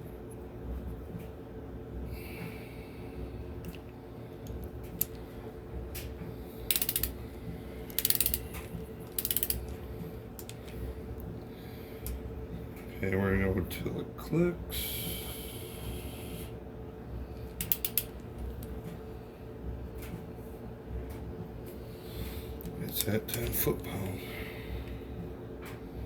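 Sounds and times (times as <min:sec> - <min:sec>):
socket ratchet clicking: 0:06.7 - 0:07.2, 0:07.8 - 0:09.8, 0:10.4 - 0:10.8, 0:17.6 - 0:18.7.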